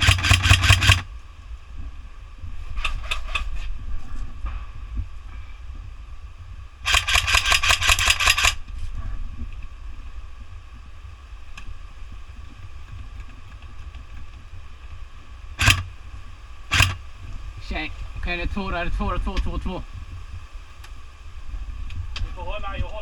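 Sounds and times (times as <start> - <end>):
airsoft gun full-auto burst: 0.0 - 1.1, 6.8 - 8.6, 15.6 - 15.9, 16.7 - 17.0.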